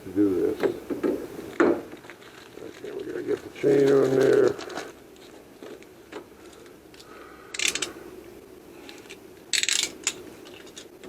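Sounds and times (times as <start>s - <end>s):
small clicks: 7.0s - 8.0s
metal saw chain clinking: 7.6s - 8.0s, 8.8s - 10.9s.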